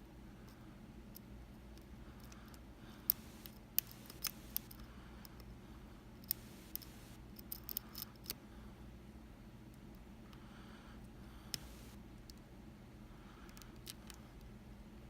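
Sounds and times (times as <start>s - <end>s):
lock pick clicking and scraping: 1.2s - 5.5s, 6.2s - 8.4s.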